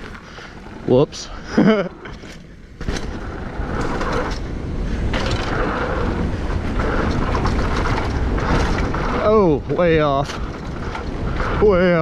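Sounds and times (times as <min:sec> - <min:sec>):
bike rattle: 0:00.0 - 0:12.0
wind noise: 0:00.0 - 0:12.0.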